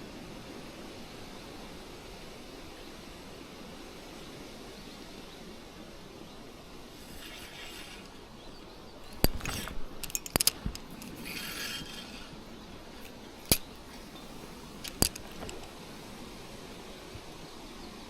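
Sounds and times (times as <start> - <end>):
steady outdoor hiss: 0.0 - 18.0
mechanism whirring: 6.9 - 15.8
sharp clicks: 9.0 - 12.4, 13.0 - 15.7.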